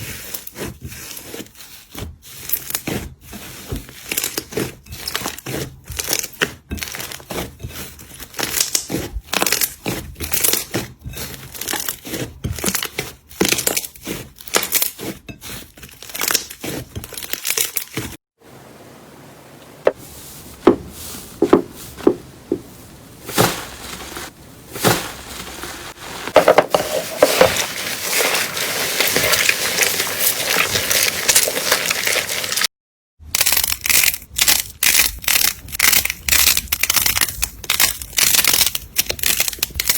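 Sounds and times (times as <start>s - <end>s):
slime crackling and popping: 8.3s - 10.6s, 27.2s - 32.7s, 33.4s - 39.9s.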